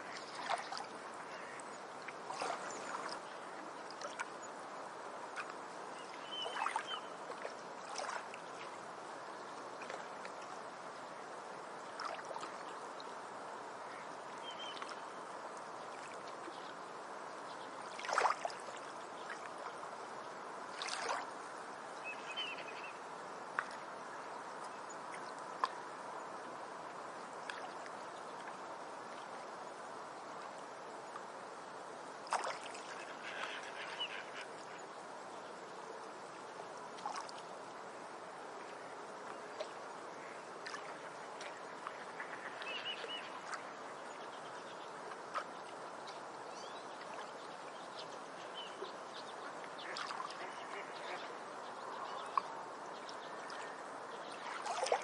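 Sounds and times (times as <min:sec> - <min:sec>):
water rushing: 0:00.0 - 0:55.0.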